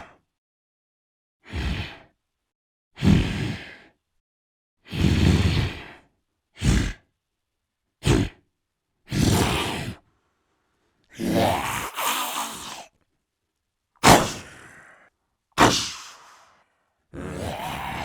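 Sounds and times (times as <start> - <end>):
deep breaths sighs and grunts: 1.4 - 2.2, 3.0 - 4.0, 4.8 - 7.1, 11.1 - 13.0, 14.0 - 18.0.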